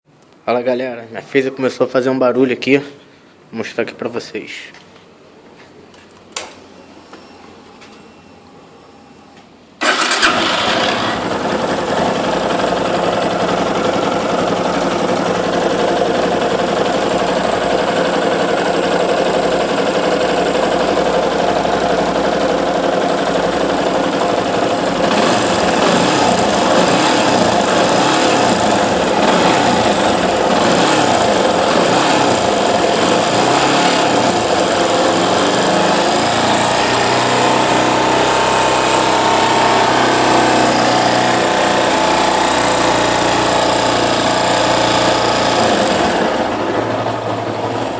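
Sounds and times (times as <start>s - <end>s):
motorcycle engine idling: 9.8s - 36.7s
engine ticking: 9.8s - 47.9s.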